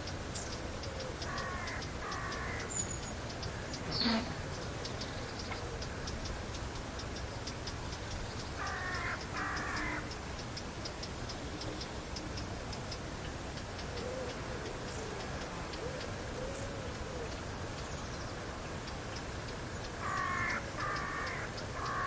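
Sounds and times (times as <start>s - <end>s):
faint low wavering calls: 0.0s - 22.0s
rapid high-pitched ticking insects: 0.0s - 22.0s
two-part animal call: 3.6s - 4.8s.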